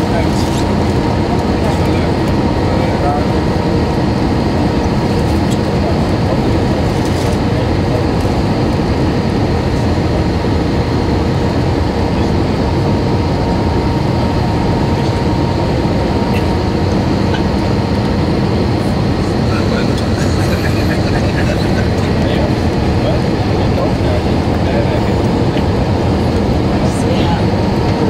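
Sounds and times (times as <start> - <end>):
jet engines droning in cabin: 0.0 - 28.0.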